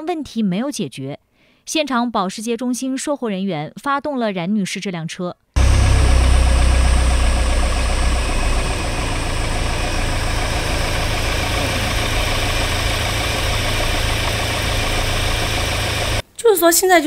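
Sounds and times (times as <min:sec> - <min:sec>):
car engine idling: 0:05.6 - 0:16.2.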